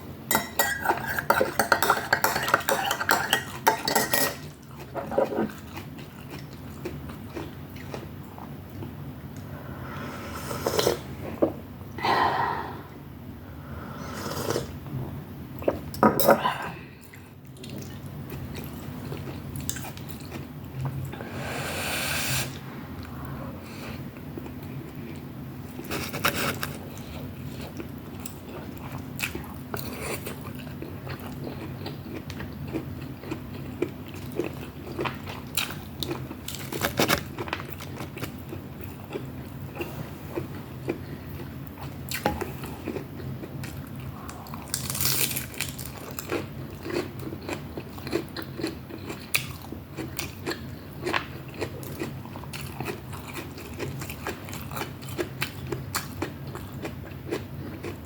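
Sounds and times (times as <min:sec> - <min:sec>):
person chewing crunchy food: 0:02.2 - 0:09.0, 0:17.1 - 0:21.1, 0:23.7 - 0:58.0.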